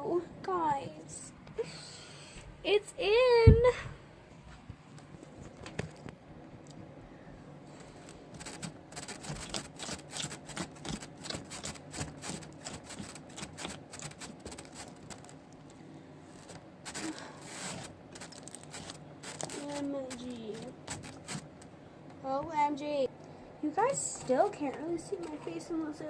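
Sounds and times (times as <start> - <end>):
slime squeezed by hand: 8.4 - 15.0.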